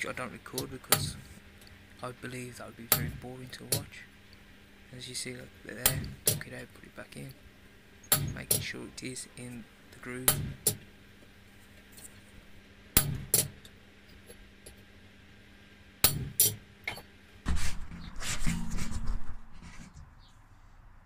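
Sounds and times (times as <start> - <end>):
hammer striking chisel on steel: 2.9 - 3.9, 8.1 - 8.7, 10.3 - 10.8
metal clattering and scraping: 17.5 - 20.1.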